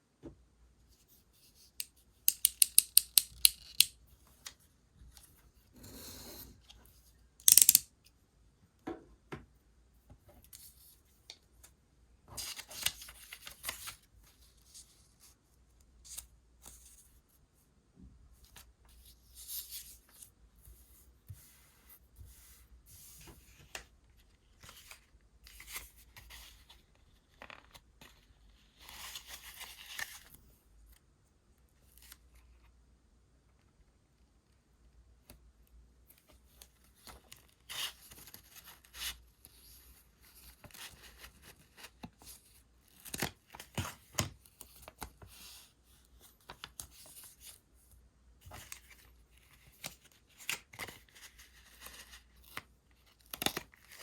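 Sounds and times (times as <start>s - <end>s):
scissors snipping paper: 2.3s - 3.9s, 7.4s - 7.8s.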